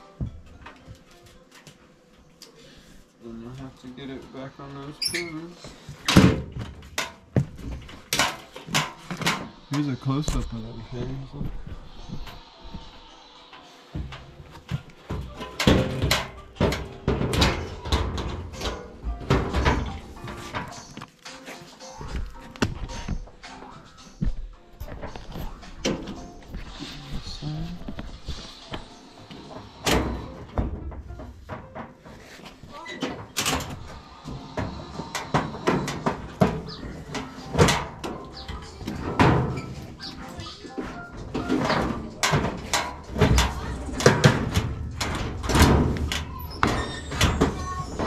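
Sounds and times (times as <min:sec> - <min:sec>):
sheet metal panels clunking: 0:14.0 - 0:20.9, 0:33.0 - 0:48.0.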